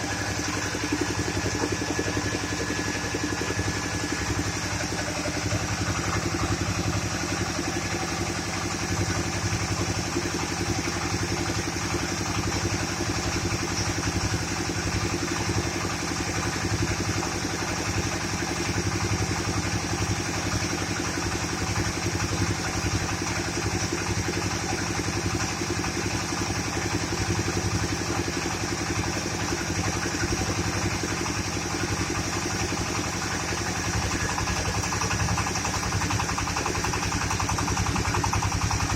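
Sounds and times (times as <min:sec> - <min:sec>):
engine firing in fast beat: 0:00.0 - 0:38.9
high whir of mill: 0:00.0 - 0:38.9.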